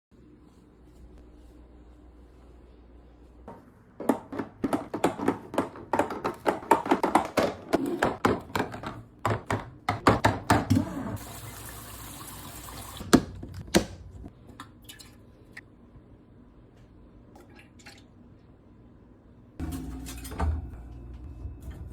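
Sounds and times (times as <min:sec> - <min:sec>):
plastic bottles knocking: 0:04.0 - 0:10.7.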